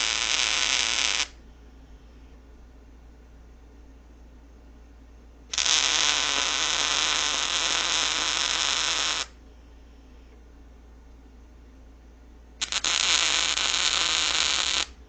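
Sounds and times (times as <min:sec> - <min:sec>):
welder hissing: 0:00.0 - 0:01.3, 0:05.5 - 0:09.3, 0:12.6 - 0:14.9.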